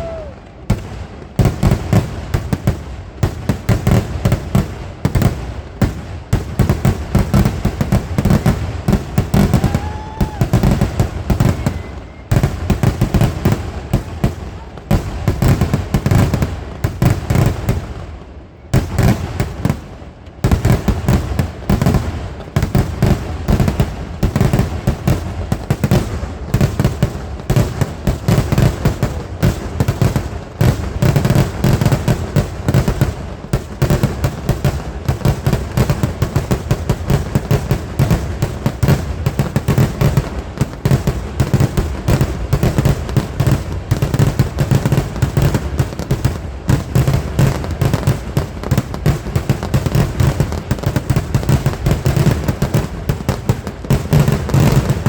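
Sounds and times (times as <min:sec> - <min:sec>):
firework explosions: 0:00.0 - 0:55.0.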